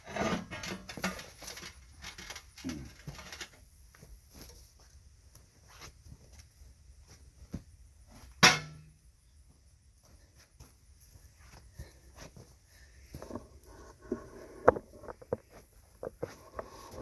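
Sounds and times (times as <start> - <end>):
faint knocks and scrapes: 0.0 - 8.4, 10.0 - 17.0.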